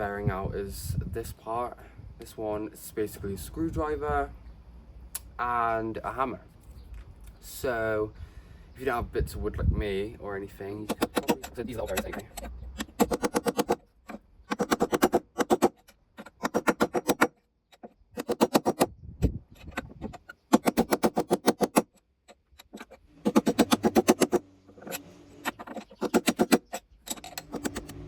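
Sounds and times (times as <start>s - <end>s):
hammer striking metal screwdriver: 10.9s - 18.9s, 19.6s - 28.0s.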